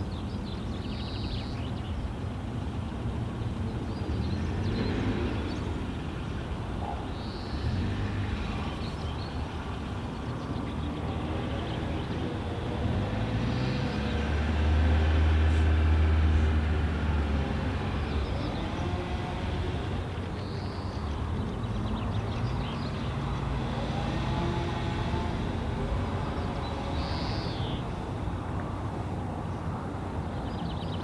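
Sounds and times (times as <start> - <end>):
passing vehicle engine rumble: 0.0 - 31.0
bird chirps: 26.4 - 27.9.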